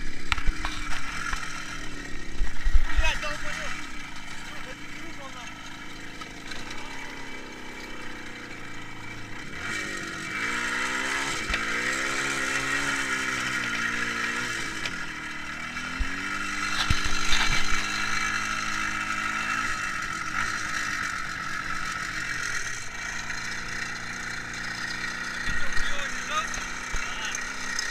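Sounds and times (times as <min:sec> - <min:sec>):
motorcycle engine running: 0:00.0 - 0:27.9.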